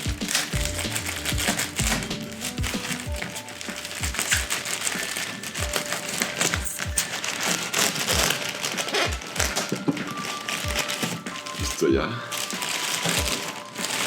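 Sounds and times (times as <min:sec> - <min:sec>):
pocket knife cutting package: 0:00.0 - 0:11.6
background music with low beat: 0:00.0 - 0:14.0
packaging crinkling and rustling: 0:00.0 - 0:14.0.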